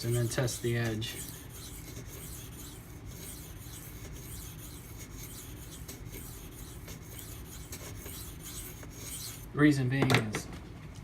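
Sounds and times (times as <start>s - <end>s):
knife scraping on sharpening stone: 0.0s - 9.5s.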